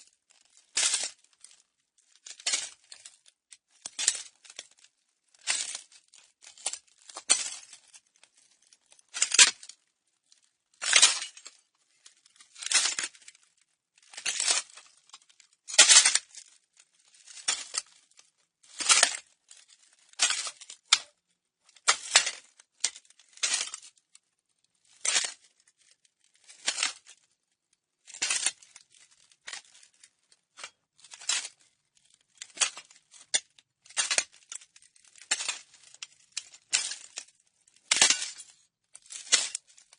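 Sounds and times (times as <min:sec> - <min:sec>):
footsteps crunching on broken glass: 0:30.6 - 0:38.5
glass shards clinking: 0:37.9 - 0:38.5.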